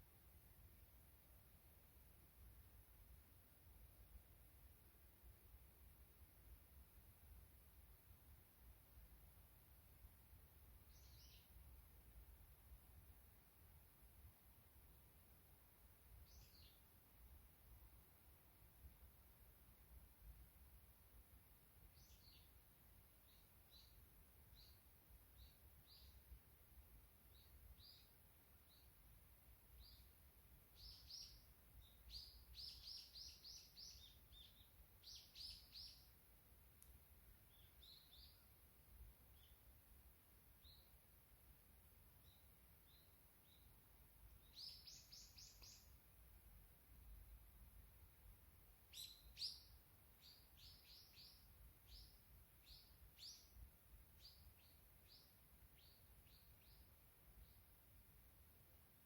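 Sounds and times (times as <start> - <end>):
small bird chirping: 10.8 - 11.6, 16.2 - 16.9, 21.9 - 22.6, 23.2 - 26.3, 27.3 - 29.0, 29.8 - 36.2, 37.4 - 38.6, 39.3 - 39.7, 40.6 - 41.0, 42.2 - 46.0, 48.8 - 57.7.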